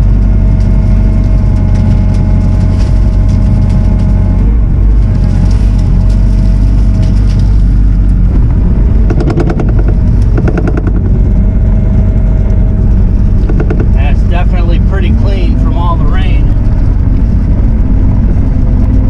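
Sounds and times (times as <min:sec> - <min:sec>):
diesel engine running under load: 0:00.0 - 0:19.0
steady whine: 0:00.0 - 0:19.0
rapid clattering: 0:04.9 - 0:19.0.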